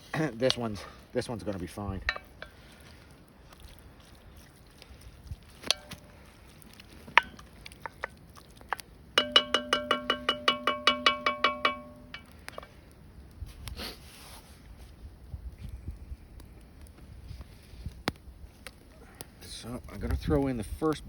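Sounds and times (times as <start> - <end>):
metal utensil clinking on pan: 2.1 - 2.6, 5.6 - 6.0, 9.2 - 12.7
rapid taps on ringing pan: 9.2 - 12.4.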